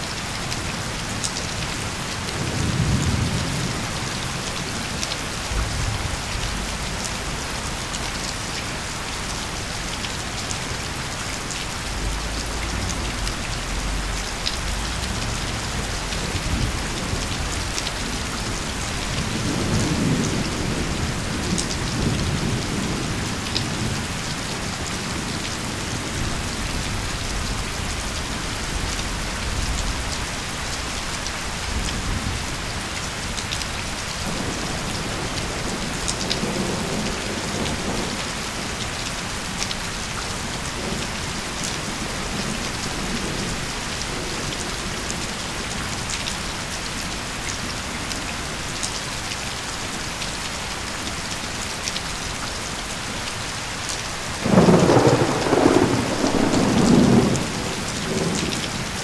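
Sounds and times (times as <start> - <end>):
heavy rain hissing: 0.1 - 59.0
distant thunder rumble: 2.4 - 8.4, 11.0 - 24.1, 54.4 - 58.9
loud thunder clap: 5.5 - 7.5, 54.4 - 58.8.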